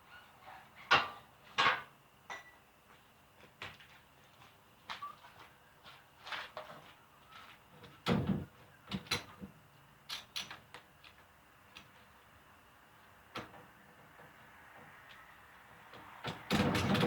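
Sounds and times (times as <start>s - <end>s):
refrigerator knocks and clunks: 8.0s - 9.1s, 16.3s - 17.0s.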